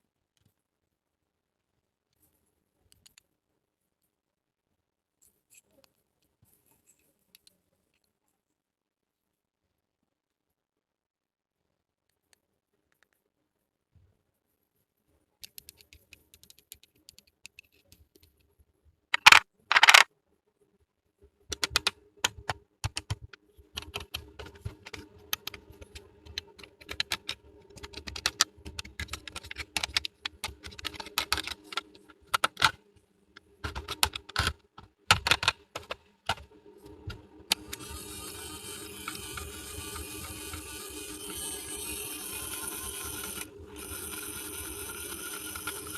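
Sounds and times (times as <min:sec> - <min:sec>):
plastic toy pieces clicking: 0:19.2 - 0:20.1, 0:21.5 - 0:32.8, 0:33.6 - 0:36.4.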